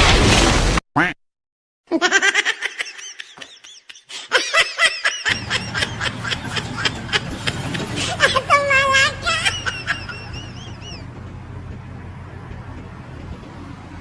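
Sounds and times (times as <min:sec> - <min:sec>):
high-pitched laughing: 0:01.9 - 0:11.2
low rumble with faint ticks: 0:06.6 - 0:14.0.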